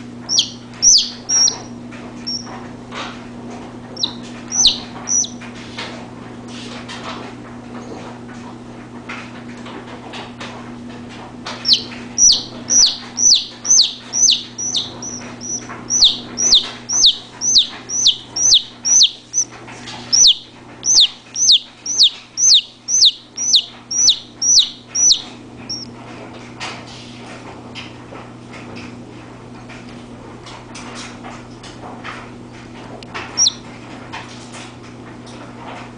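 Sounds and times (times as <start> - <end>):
chick peeping loudly: 0.3 - 1.7, 2.3 - 2.5, 4.0 - 5.4, 11.6 - 19.5, 20.1 - 25.9, 33.4 - 33.6.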